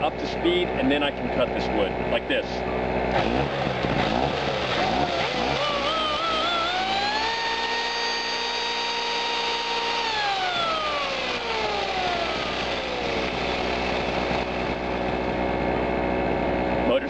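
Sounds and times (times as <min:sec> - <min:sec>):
small generator running: 0:00.0 - 0:17.0
electric chainsaw motor whining: 0:03.1 - 0:16.0.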